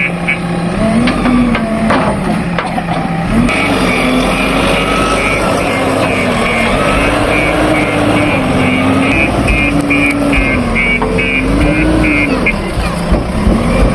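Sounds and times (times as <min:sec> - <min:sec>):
diesel engine revving: 0:00.0 - 0:13.9
reversing alarm beeping: 0:03.5 - 0:12.8.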